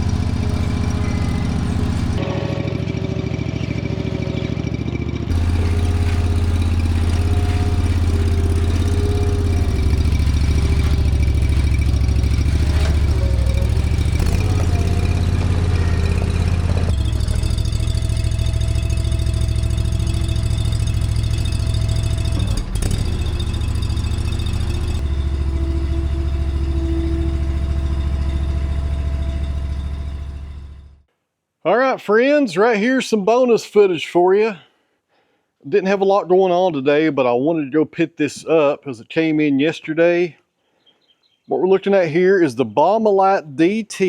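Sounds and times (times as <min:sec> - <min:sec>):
machine engine humming and whining: 0:00.0 - 0:31.0.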